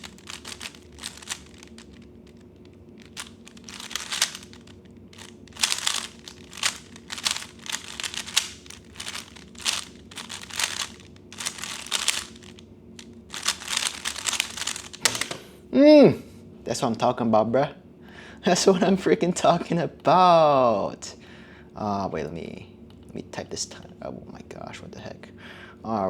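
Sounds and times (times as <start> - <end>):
plastic cube clicking: 0.0 - 2.4, 3.0 - 12.6, 13.3 - 15.4.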